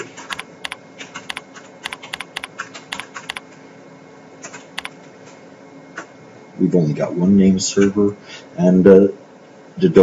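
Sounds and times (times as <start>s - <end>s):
keyboard key clicks: 0.3s - 3.4s.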